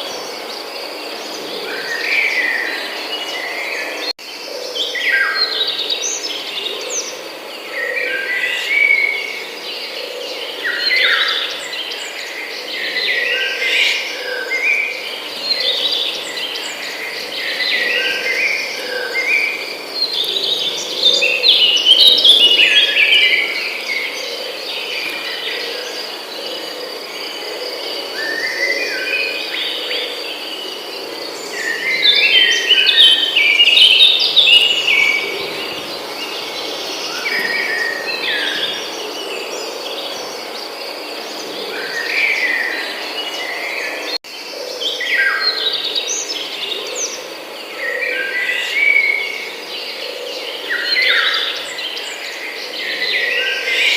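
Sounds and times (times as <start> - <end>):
songbirds singing: 0.0 - 53.9
high insect trill: 9.4 - 44.7.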